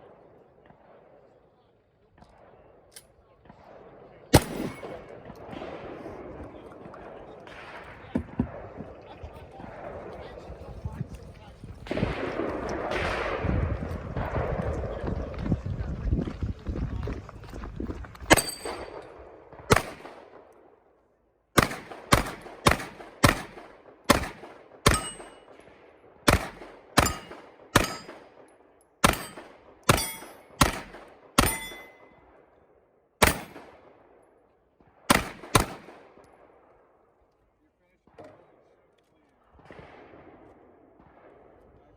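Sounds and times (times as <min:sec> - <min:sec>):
gunshots: 0:02.1 - 0:15.7, 0:18.2 - 0:20.8, 0:21.6 - 0:32.4, 0:33.2 - 0:34.2, 0:34.8 - 0:36.8, 0:39.5 - 0:41.9
metallic ring of steel targets: 0:04.4 - 0:05.1, 0:18.3 - 0:19.0, 0:24.9 - 0:25.5, 0:27.0 - 0:28.2, 0:29.0 - 0:30.5, 0:31.4 - 0:32.1.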